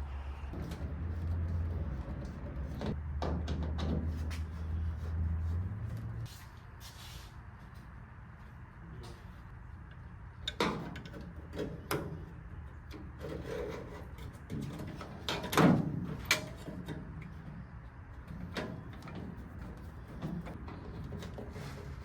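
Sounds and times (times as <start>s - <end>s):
tools and parts clunking: 10.4s - 17.6s.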